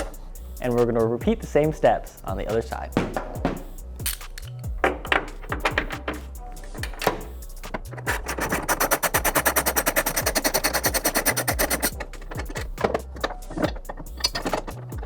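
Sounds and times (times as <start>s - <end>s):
background music: 0.0s - 15.0s
ratchet clicking: 3.8s - 15.0s.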